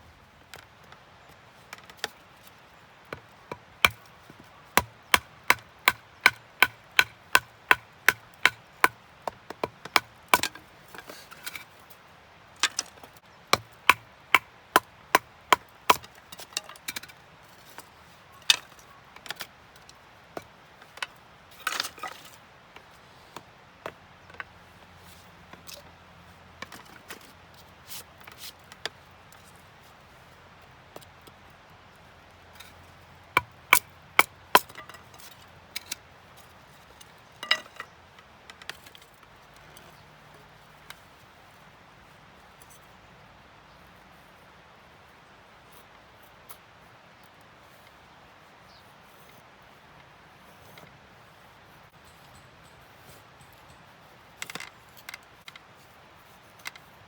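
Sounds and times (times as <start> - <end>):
firewood being chopped: 3.1 - 11.6, 12.6 - 17.2, 33.4 - 36.0, 37.4 - 39.0.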